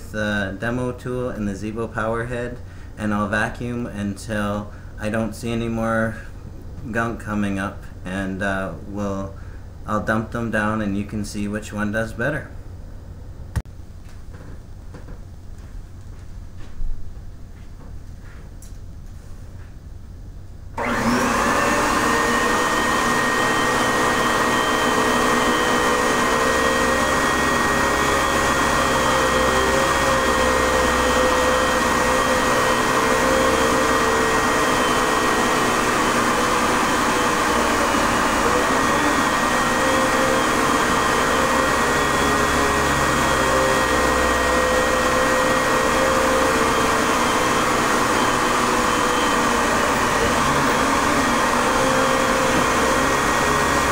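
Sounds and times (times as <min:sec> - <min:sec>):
vacuum cleaner running: 0:20.8 - 0:53.9.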